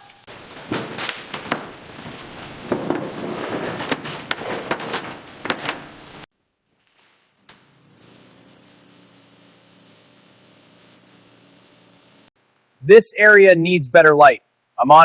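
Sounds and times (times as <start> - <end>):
building work knocks and clatter: 0.3 - 6.2.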